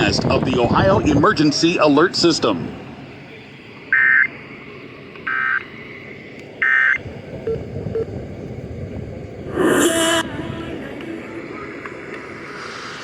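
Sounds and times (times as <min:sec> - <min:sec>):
warbling digital data tones: 0:03.9 - 0:04.4, 0:05.3 - 0:05.6, 0:06.6 - 0:08.1
background hiss: 0:09.2 - 0:13.0.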